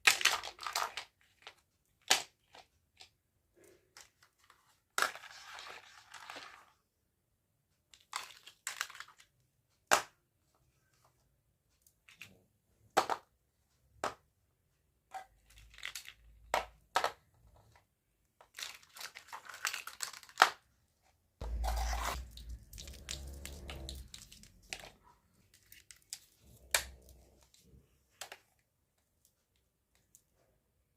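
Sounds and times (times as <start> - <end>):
packaging crinkling and tearing: 21.5 - 24.9.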